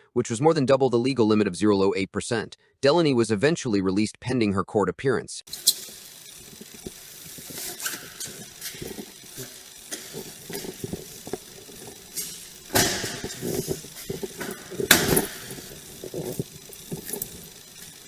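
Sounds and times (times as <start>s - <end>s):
rustling: 5.5s - 18.0s.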